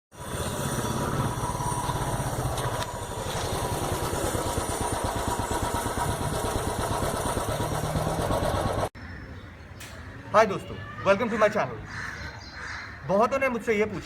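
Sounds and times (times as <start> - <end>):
motorcycle engine idling: 0.2 - 8.9.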